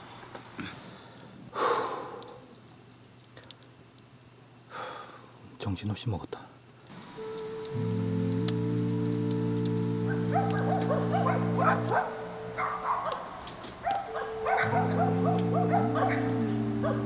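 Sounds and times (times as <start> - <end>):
background music of held chords: 7.1 - 13.4, 14.1 - 17.0.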